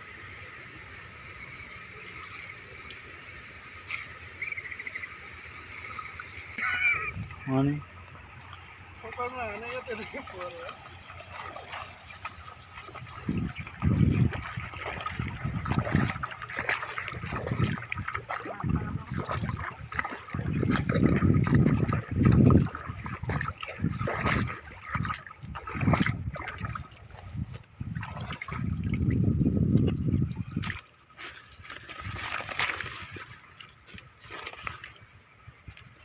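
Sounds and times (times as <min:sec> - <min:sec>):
shallow water splashing: 0:02.1 - 0:36.0.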